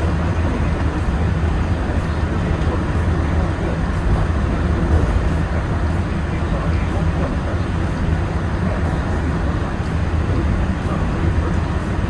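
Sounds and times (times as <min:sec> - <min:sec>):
monorail rumbling at speed: 0:00.0 - 0:12.0.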